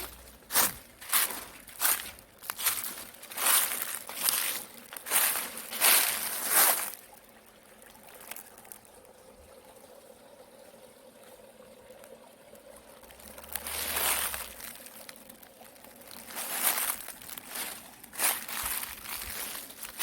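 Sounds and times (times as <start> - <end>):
footsteps on dry leaves: 0.0 - 7.1, 13.1 - 20.0
stream trickling: 0.0 - 20.0.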